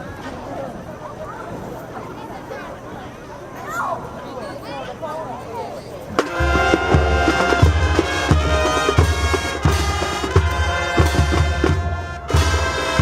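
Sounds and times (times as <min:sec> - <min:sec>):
brass and woodwinds playing chords: 0:06.2 - 0:13.0
drumline and bass drum hits: 0:06.2 - 0:13.0.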